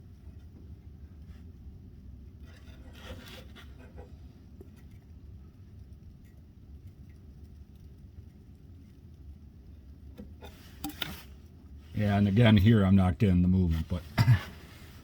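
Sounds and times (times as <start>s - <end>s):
steady low rumble: 0.0s - 3.0s, 3.7s - 15.0s.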